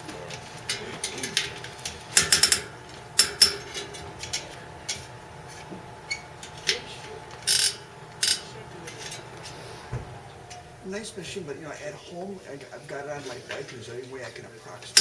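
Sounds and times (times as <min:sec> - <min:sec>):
metallic clicks and scrapes: 0:00.7 - 0:05.0, 0:07.5 - 0:09.6.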